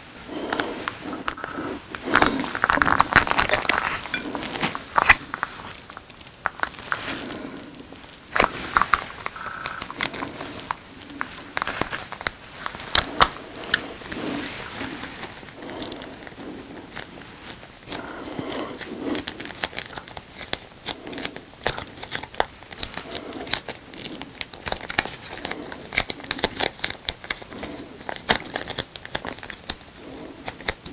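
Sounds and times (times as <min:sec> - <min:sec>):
plastic packaging crinkling: 0:01.2 - 0:18.0.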